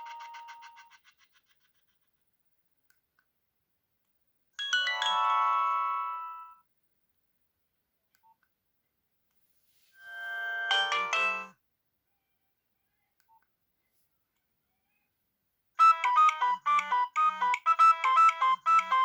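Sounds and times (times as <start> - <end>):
mobile phone ringtone: 0.0 - 0.8, 4.6 - 6.6, 10.0 - 11.5, 15.8 - 19.0.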